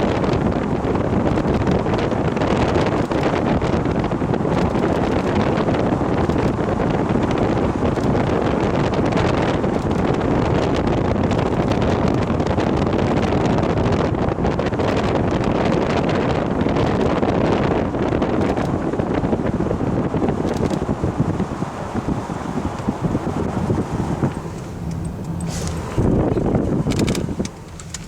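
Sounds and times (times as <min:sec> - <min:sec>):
wind rumbling on microphone: 0:00.0 - 0:28.0.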